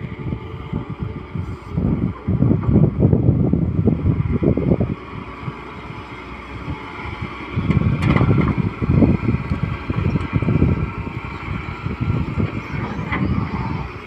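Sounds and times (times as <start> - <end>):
excavator diesel engine working: 0.0 - 14.0.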